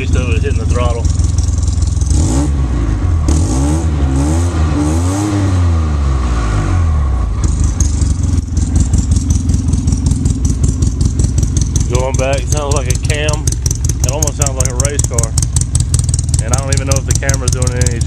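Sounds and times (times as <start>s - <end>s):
engine choppy idle: 0.0s - 3.4s, 7.2s - 18.0s
engine revving: 0.0s - 18.0s.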